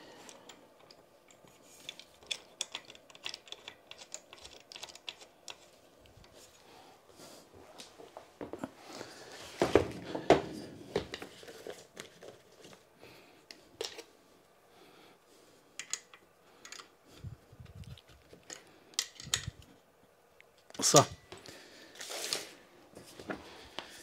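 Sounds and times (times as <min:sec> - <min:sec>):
metal parts clicking and rattling: 0:00.3 - 0:05.8, 0:15.8 - 0:16.9, 0:17.9 - 0:19.7.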